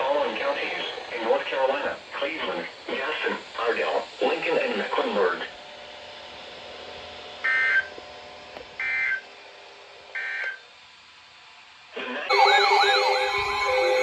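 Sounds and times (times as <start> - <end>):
digital data tone bursts: 12.3 - 14.0.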